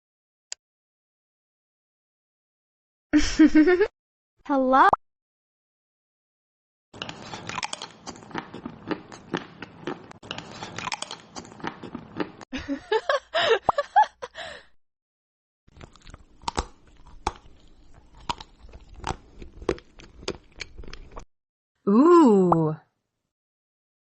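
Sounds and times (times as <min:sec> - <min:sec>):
crunchy food chewing: 0:07.0 - 0:12.4, 0:15.7 - 0:21.3.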